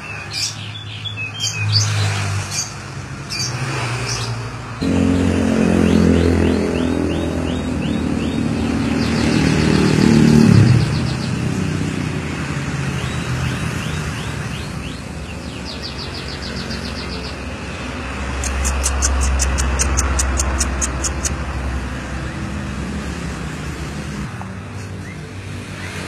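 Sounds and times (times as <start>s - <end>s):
canary singing: 0.0s - 11.5s, 12.9s - 21.7s
motorcycle engine passing: 4.8s - 13.0s.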